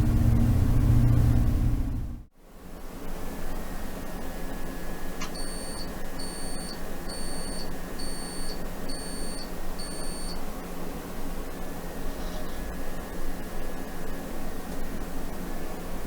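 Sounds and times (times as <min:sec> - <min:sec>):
high-pitched electronic beeps: 0:05.4 - 0:10.4.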